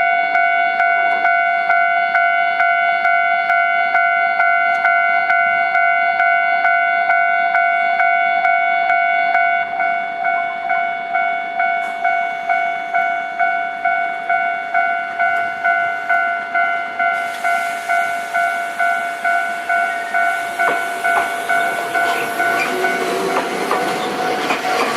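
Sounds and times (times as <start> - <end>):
level crossing warning bell: 0.0 - 24.9
train rushing past: 17.1 - 24.9.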